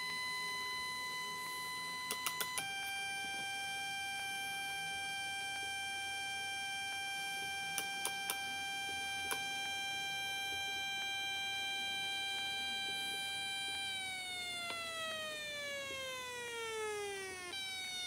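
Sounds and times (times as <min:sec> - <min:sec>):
sharp clicks: 0:02.1 - 0:02.7.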